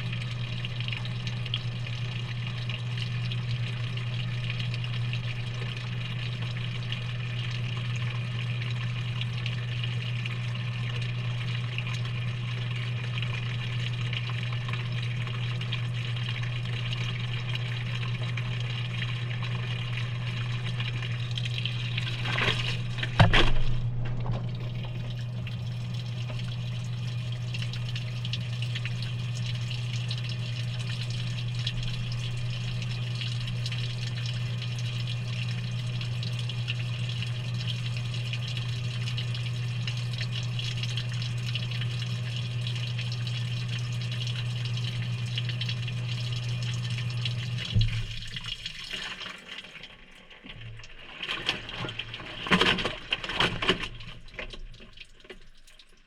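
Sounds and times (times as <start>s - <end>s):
water hissing into washer drum: 0.0s - 23.3s, 24.1s - 56.0s
washer low hum: 0.0s - 56.0s
water splashes and drips: 13.0s - 56.0s.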